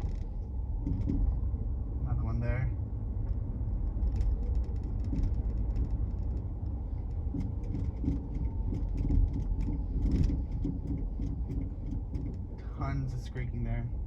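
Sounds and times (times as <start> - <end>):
truck rolling low rumble: 0.0 - 14.0
suspension thuds and squeaks: 4.2 - 12.6.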